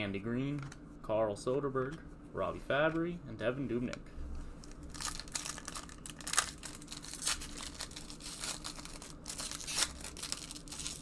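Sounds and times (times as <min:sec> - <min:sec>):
wrapper crinkling and tearing: 0:04.6 - 0:11.0.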